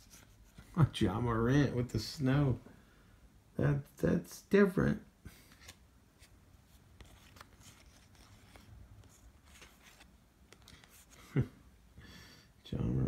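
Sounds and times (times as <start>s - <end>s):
trading cards being shuffled: 5.4s - 11.4s.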